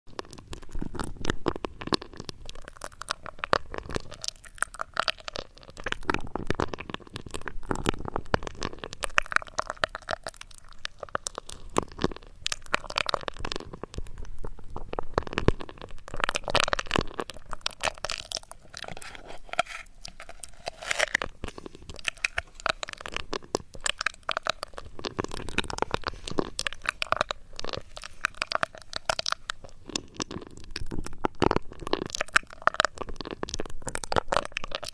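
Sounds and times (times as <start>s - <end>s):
crunching scratches on microphone: 14.6s - 34.9s.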